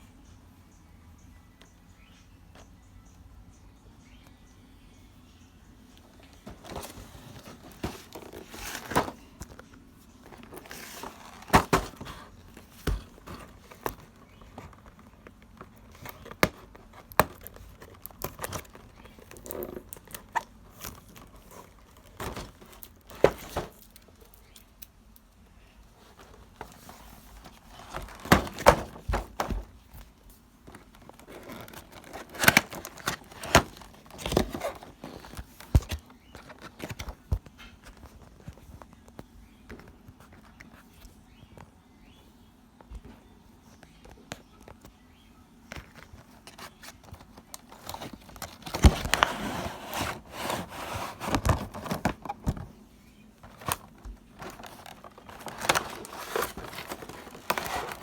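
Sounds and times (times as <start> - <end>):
packaging crinkling and tearing: 10.3 - 24.6, 30.6 - 37.2, 45.9 - 52.6, 53.4 - 58.0.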